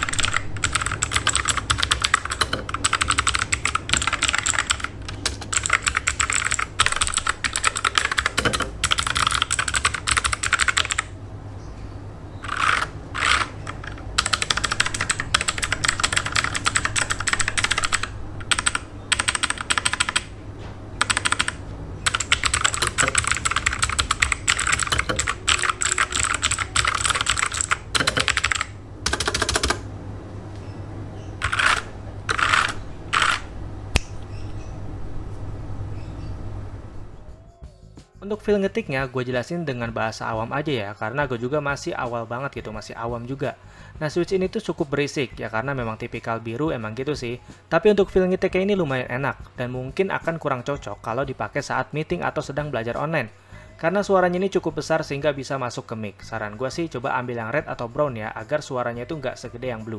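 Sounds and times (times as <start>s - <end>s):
clicky mechanical keyboard typing: 0.0s - 11.1s, 12.4s - 20.3s, 21.0s - 29.8s, 31.4s - 33.4s.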